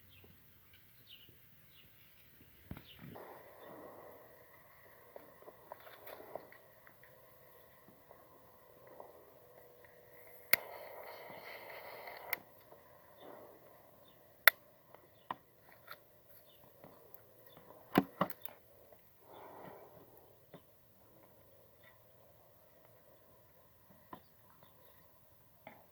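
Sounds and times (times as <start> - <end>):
steady hiss: 1.4 - 25.7
sharp clicks: 14.4 - 16.0
short breathy rush: 19.1 - 21.5.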